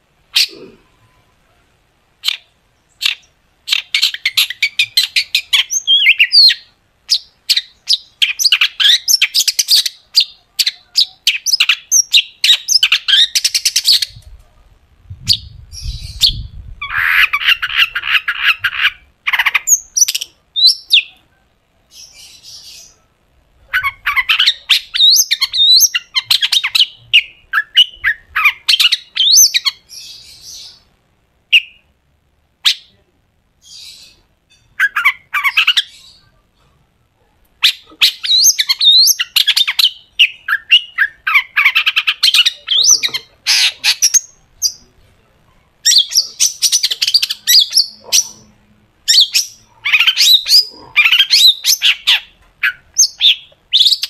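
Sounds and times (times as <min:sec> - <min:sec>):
shrike chattering and whistling: 0:37.6 - 0:44.8, 0:49.1 - 0:54.0.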